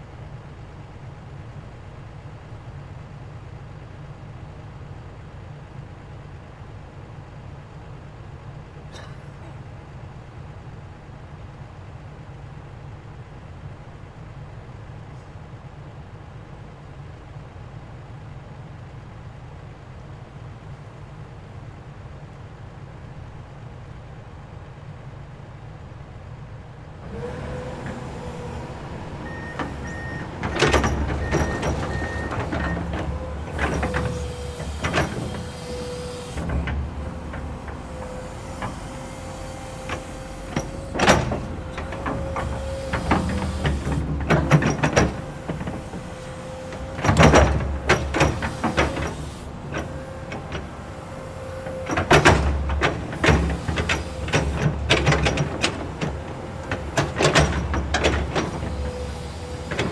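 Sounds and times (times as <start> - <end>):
excavator engine whining: 26.7 - 59.9
metallic clanks and knocks: 29.1 - 59.9.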